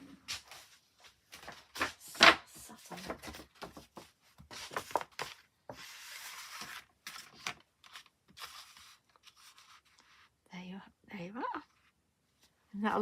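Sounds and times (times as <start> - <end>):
card and paper rustling: 1.3 - 10.4.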